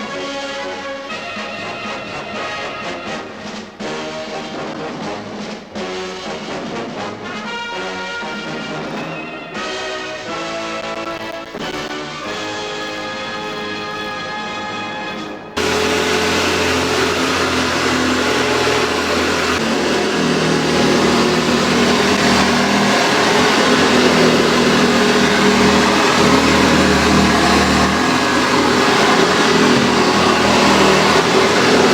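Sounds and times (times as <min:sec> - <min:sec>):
vacuum cleaner running: 0:15.6 - 0:31.9.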